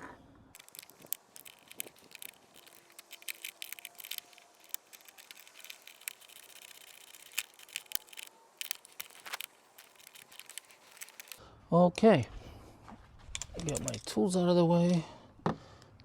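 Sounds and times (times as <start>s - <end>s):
hand tools clicking on metal: 0.5s - 11.4s, 13.4s - 14.2s.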